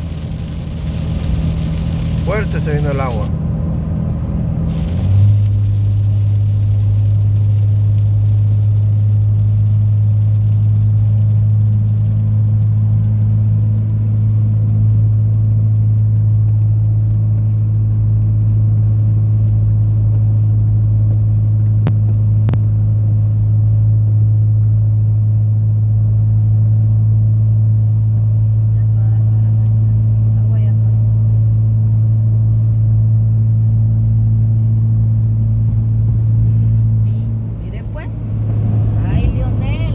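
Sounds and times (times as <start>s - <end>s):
rain hissing on windshield: 0.0s - 23.8s, 35.6s - 39.9s
car engine and road drone: 0.0s - 39.9s.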